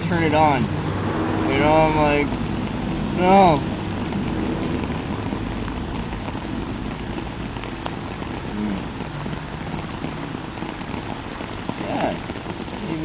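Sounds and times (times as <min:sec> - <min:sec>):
low rumble: 0:00.0 - 0:11.1
steady rain falling: 0:00.0 - 0:13.0.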